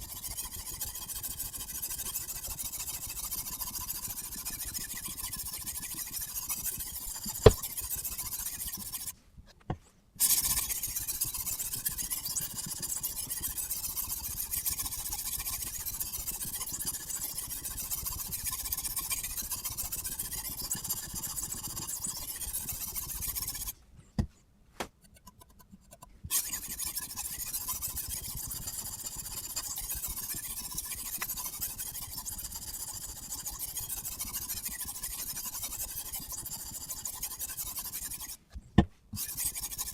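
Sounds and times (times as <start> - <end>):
sharpening stone rubbing knife edge: 25.0 - 32.9, 39.2 - 39.9.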